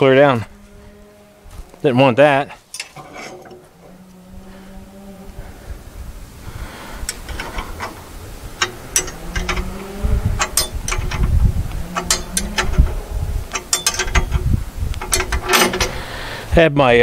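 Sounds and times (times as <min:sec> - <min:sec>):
low rumble: 0:03.0 - 0:16.3
metallic clicking and ratcheting: 0:07.0 - 0:16.1.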